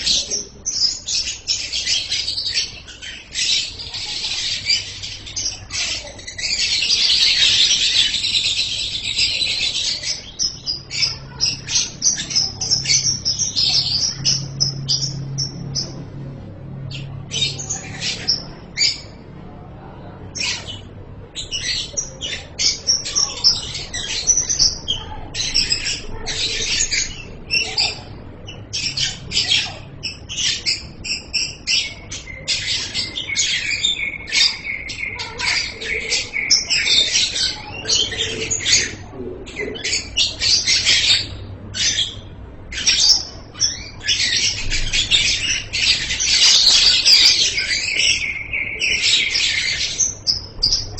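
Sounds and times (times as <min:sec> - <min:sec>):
bird chattering in chirps: 0:20.3 - 0:50.9.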